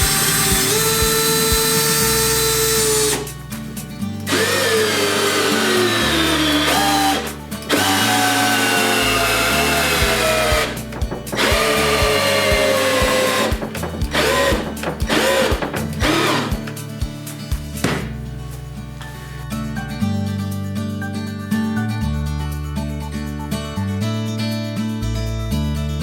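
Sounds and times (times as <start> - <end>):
cordless drill motor whining: 0.0 - 3.5, 4.3 - 16.8
background music with beat: 0.0 - 20.6.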